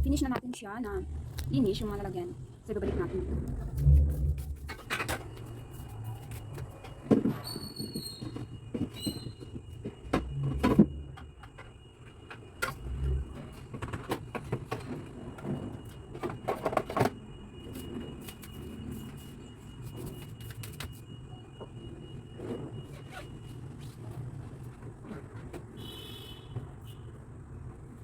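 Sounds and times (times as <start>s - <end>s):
plastic parts squeaking: 3.4s - 21.0s, 22.4s - 25.8s.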